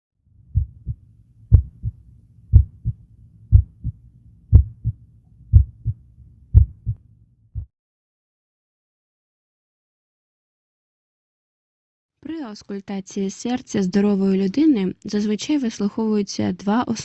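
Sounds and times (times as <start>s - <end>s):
heartbeat lub-dub: 0.5s - 7.0s.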